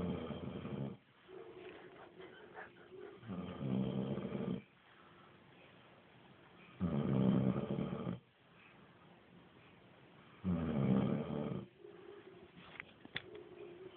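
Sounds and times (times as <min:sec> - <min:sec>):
snoring: 0:00.0 - 0:01.0, 0:03.3 - 0:04.7, 0:06.8 - 0:08.2, 0:10.4 - 0:11.7.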